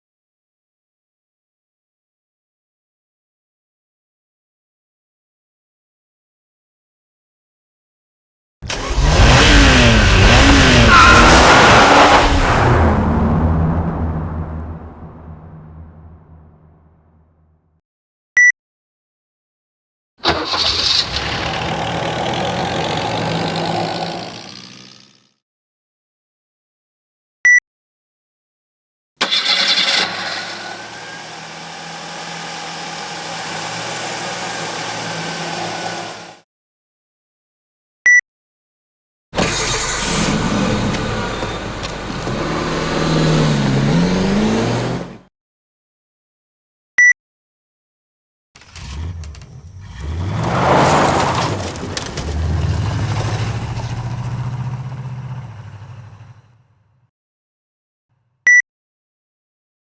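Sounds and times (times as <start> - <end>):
car engine starting: 8.6 - 16.8, 20.2 - 25.1, 29.2 - 36.4, 39.4 - 45.2, 48.6 - 56.7
car engine idling: 20.3 - 24.9, 51.5 - 56.5.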